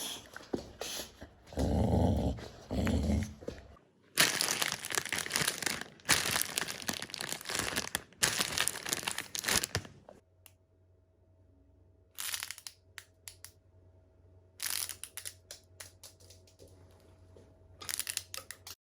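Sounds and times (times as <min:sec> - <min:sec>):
crinkling tearing noise: 0:04.2 - 0:10.2, 0:14.6 - 0:16.4, 0:17.8 - 0:18.8
faint steady hum: 0:06.8 - 0:18.7.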